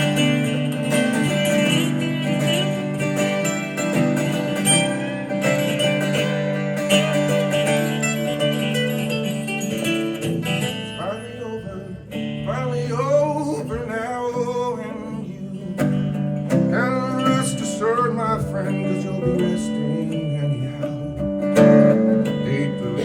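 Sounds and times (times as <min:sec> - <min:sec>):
sliding lead melody: 0:00.0 - 0:14.4
acoustic guitar strumming: 0:00.0 - 0:23.0.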